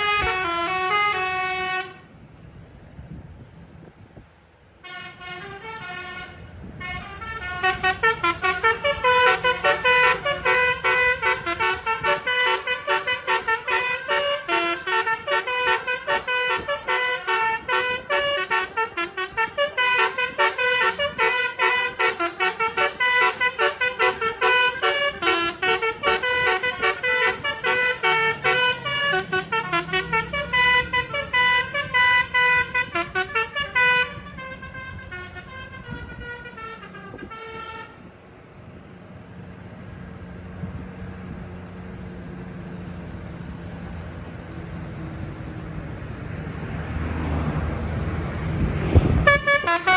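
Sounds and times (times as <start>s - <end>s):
bus horn playing a tune: 0.0s - 2.1s, 4.8s - 38.1s, 48.2s - 49.9s.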